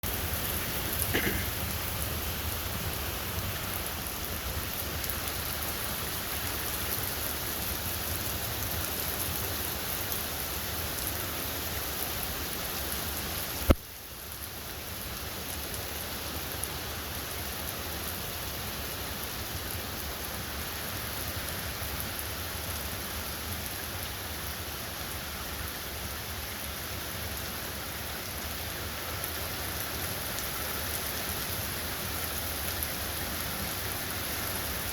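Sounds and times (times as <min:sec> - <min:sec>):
rain downpour hiss: 0:00.0 - 0:34.9.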